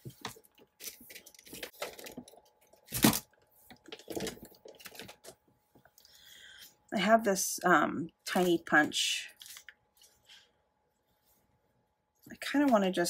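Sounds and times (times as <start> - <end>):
paper rustling and scraping: 0.0 - 5.4.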